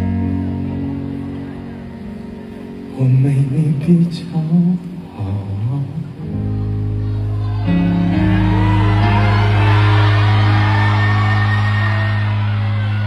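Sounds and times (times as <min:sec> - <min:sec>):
live band holding a chord: 0:00.0 - 0:13.0
crowd cheering and screaming: 0:06.4 - 0:13.0.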